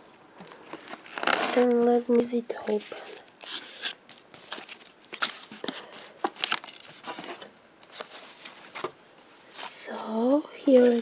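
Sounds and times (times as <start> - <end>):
packaging rustling and tearing: 0.8 - 1.8, 2.7 - 8.9.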